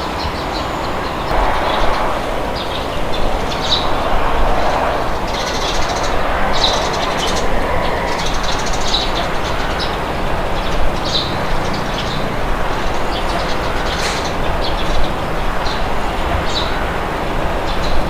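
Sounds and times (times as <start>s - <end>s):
wind rushing: 1.2s - 13.7s.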